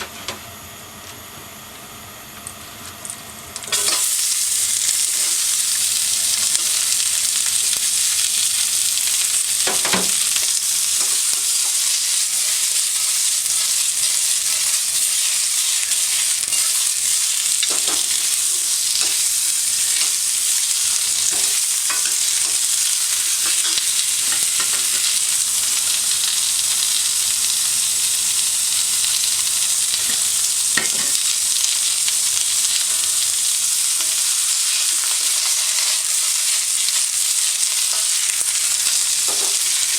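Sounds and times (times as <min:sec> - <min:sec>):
food sizzling in hot oil: 0:03.6 - 0:39.9
utensil scraping wok: 0:03.7 - 0:04.2, 0:10.9 - 0:20.2.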